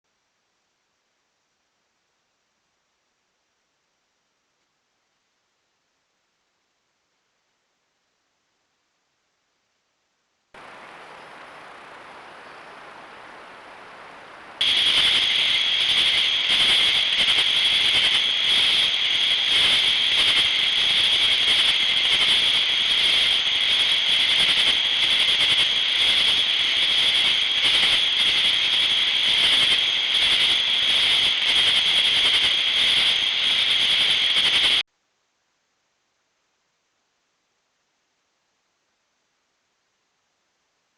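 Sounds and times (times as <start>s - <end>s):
insect chorus buzzing: 10.6s - 34.8s.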